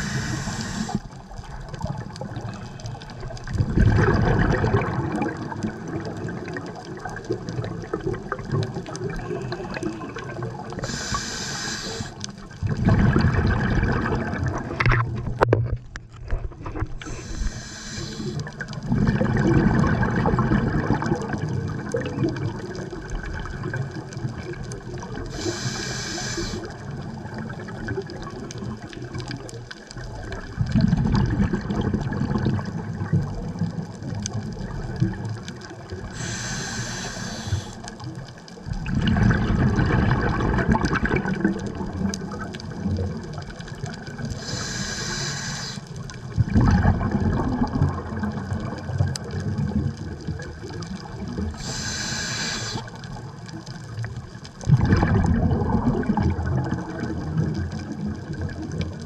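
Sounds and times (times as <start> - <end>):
hissing regulator inhales: 0.0 - 1.1, 10.8 - 12.3, 17.0 - 18.5, 25.3 - 26.7, 36.1 - 37.9, 44.4 - 45.9, 51.6 - 52.9
bubbling exhaled air: 0.0 - 15.4, 16.3 - 59.0.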